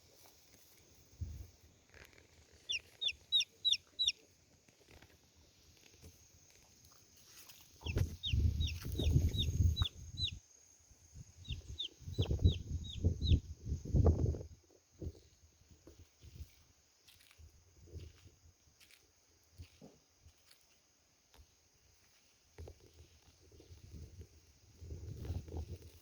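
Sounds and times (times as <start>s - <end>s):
chicks peeping: 2.5s - 5.1s, 7.3s - 10.4s, 11.4s - 13.5s.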